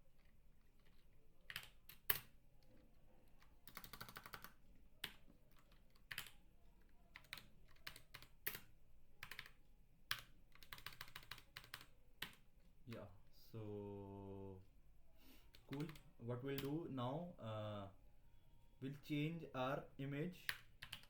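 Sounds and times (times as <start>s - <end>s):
keyboard typing: 0.1s - 13.1s, 15.5s - 17.2s, 20.4s - 21.0s.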